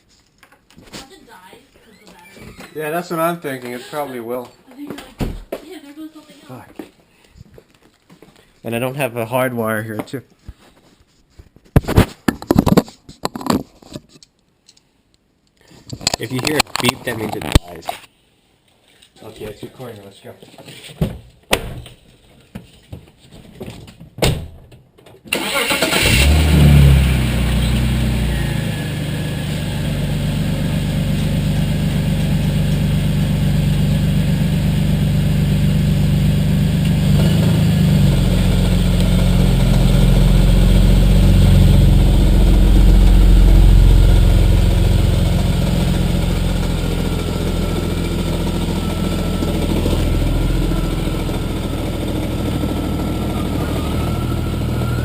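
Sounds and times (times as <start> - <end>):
car engine cranking and idling: 25.3 - 55.0.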